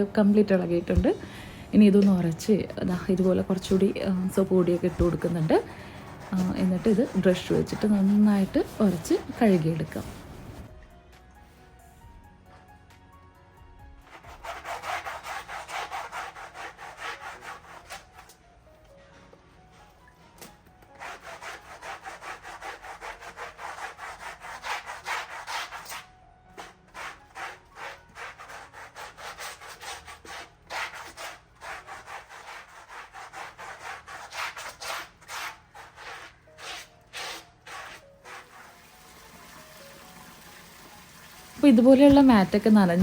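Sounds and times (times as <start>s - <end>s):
stiff brush scrubbing wet mat: 3.0s - 10.7s, 14.0s - 18.4s, 20.8s - 39.6s.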